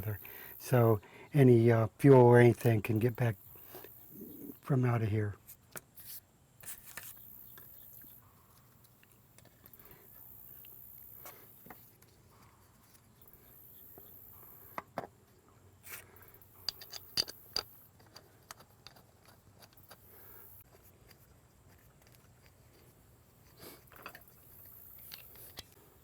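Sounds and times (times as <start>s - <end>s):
small metal parts clicking: 16.4s - 20.0s, 23.8s - 25.8s.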